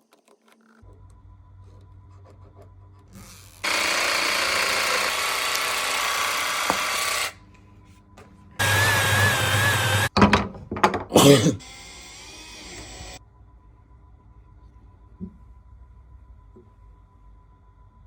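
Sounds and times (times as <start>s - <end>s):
power tool motor whine on wood: 3.6s - 7.4s, 8.6s - 10.1s, 11.6s - 13.2s.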